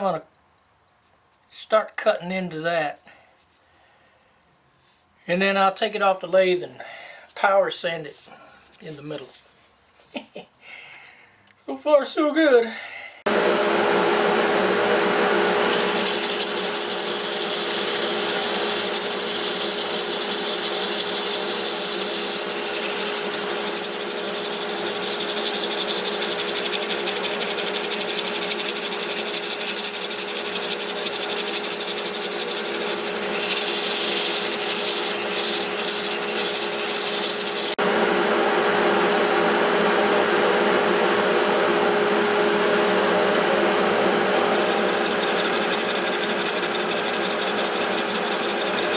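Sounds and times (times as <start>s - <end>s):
wood lathe hum: 13.3s - 48.9s
tool rushing against wood: 15.0s - 37.8s, 44.3s - 48.9s.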